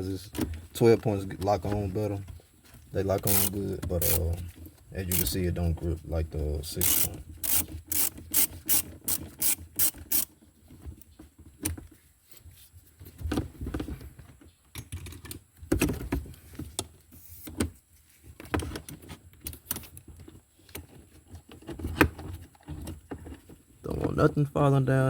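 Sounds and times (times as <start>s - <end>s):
socket ratchet clicking: 3.3s - 4.2s, 5.1s - 5.4s, 6.8s - 10.3s.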